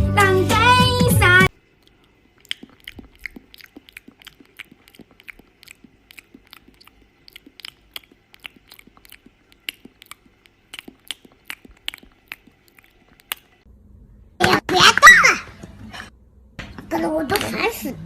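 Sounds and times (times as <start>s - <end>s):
pet chewing crunchy food: 1.6s - 13.6s.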